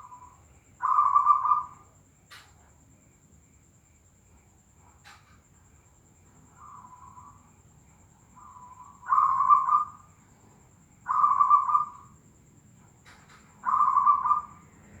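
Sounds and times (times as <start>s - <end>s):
dove cooing: 13.6s - 15.0s.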